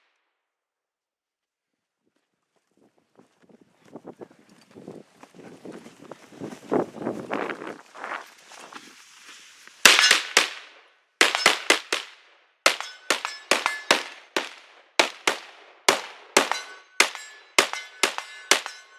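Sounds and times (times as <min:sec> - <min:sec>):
metallic ring of steel targets: 0:09.9 - 0:10.4, 0:11.2 - 0:11.9, 0:12.7 - 0:14.5, 0:16.3 - 0:18.9
rifle shots: 0:09.9 - 0:18.9.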